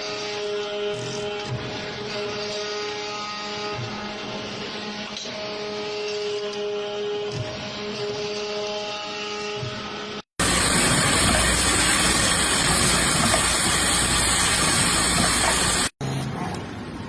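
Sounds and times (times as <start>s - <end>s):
machining hiss: 10.4s - 16.0s.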